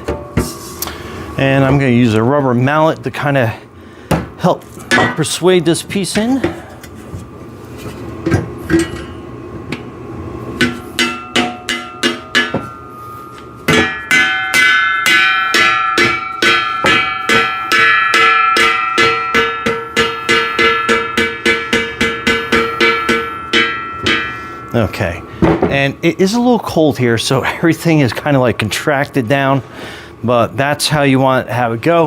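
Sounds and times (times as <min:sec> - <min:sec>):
rubber mallet striking steel tubing: 0:10.6 - 0:12.8, 0:13.7 - 0:24.8.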